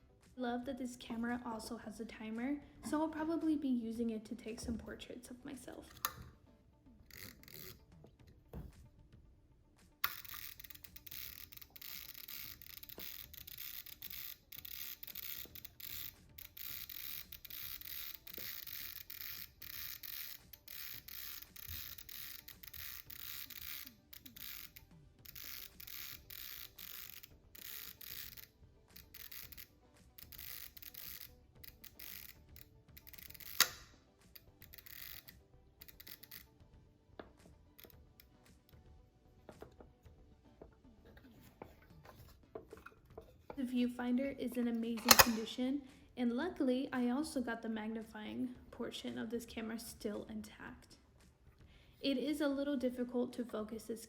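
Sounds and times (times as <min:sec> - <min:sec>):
camera self-timer whirring: 0:10.0 - 0:36.5
camera shutter click: 0:45.0 - 0:45.5.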